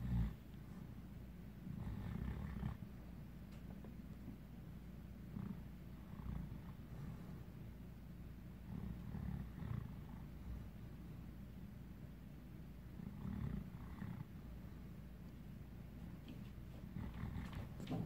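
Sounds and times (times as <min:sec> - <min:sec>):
dog snoring: 0:00.0 - 0:00.9, 0:01.6 - 0:03.0, 0:05.2 - 0:07.5, 0:08.6 - 0:11.2, 0:12.9 - 0:14.8, 0:16.8 - 0:18.0.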